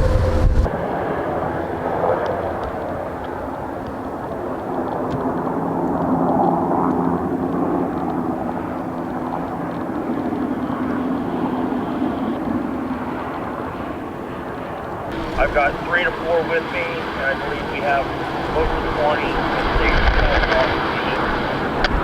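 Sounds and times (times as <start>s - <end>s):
helicopter engine and rotor: 0.0s - 22.0s.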